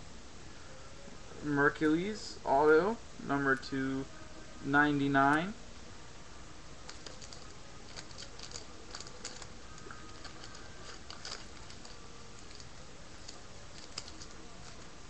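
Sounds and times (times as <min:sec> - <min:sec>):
steady background hiss: 0:00.0 - 0:15.0
trading cards clicking and rustling: 0:06.8 - 0:14.9.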